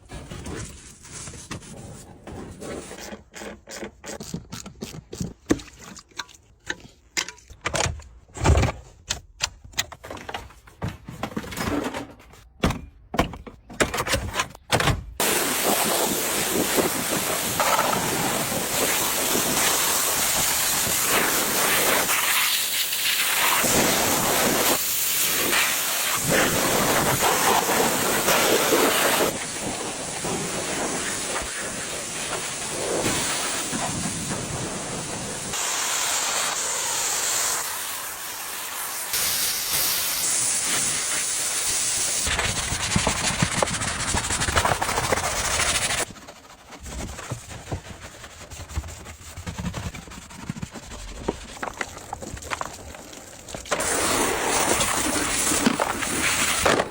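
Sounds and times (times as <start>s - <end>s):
pressure washer spraying water: 15.2s - 46.0s, 53.8s - 56.6s.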